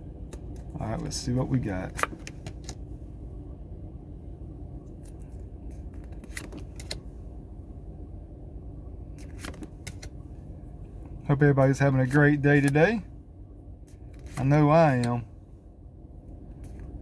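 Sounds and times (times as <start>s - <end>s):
steady low rumble: 0.0s - 17.0s
trading cards being flipped: 5.0s - 7.0s, 9.2s - 10.1s.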